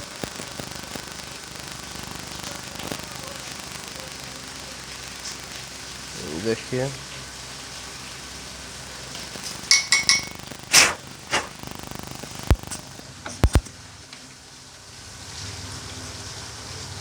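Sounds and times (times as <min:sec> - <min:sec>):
small metal tools clinking: 0:09.6 - 0:10.4.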